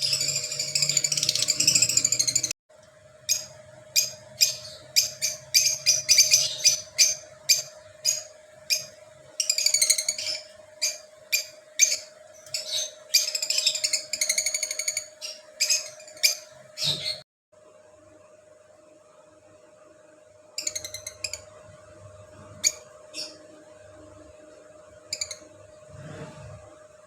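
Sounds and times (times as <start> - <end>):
parrots chirping: 0.0 - 2.5, 3.3 - 17.2, 20.6 - 21.5, 22.4 - 23.4, 25.1 - 25.5.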